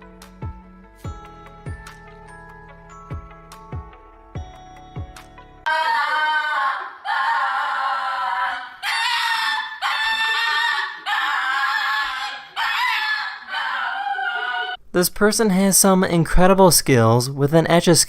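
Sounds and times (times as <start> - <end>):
high-pitched voice wailing: 5.7 - 14.8.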